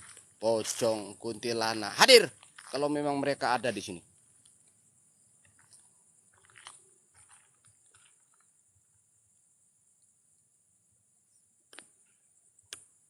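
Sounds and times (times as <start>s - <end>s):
faint crunching clicks: 0.0s - 0.9s, 2.3s - 3.0s, 3.7s - 4.8s, 5.4s - 8.5s, 11.7s - 13.0s
steady high hiss: 0.0s - 5.2s.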